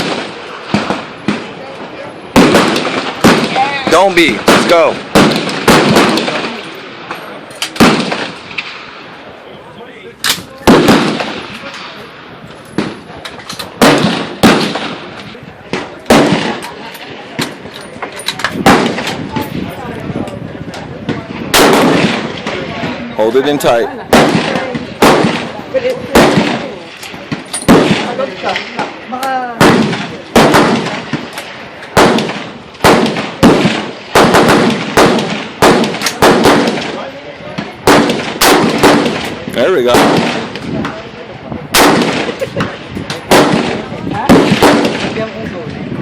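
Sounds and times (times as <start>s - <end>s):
rifle shots echoing: 0.0s - 9.2s, 10.2s - 12.1s, 12.8s - 19.5s, 21.0s - 41.0s, 41.7s - 45.5s
fainter gunshots: 2.4s - 6.7s, 7.7s - 8.9s, 10.3s - 11.8s, 13.7s - 15.1s, 15.7s - 17.4s, 18.6s - 19.2s, 21.1s - 23.4s, 24.1s - 28.9s, 29.6s - 40.6s, 41.8s - 45.3s.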